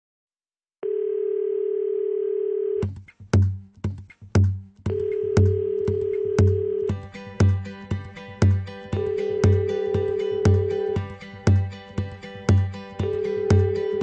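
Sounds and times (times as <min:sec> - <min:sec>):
telephone dial tone: 0:00.8 - 0:02.8, 0:04.9 - 0:06.9, 0:09.0 - 0:11.0, 0:13.0 - 0:14.0
drum beat with low kick: 0:02.8 - 0:14.0.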